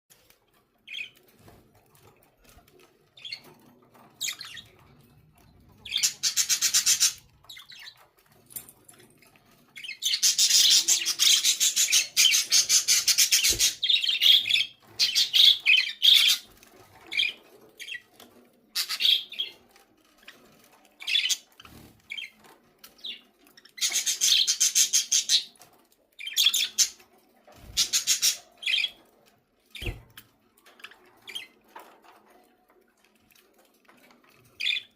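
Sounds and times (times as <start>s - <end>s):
budgerigars chattering and squawking: 5.8s - 8.0s, 9.8s - 16.5s, 18.7s - 19.6s, 23.0s - 25.6s, 27.7s - 29.0s.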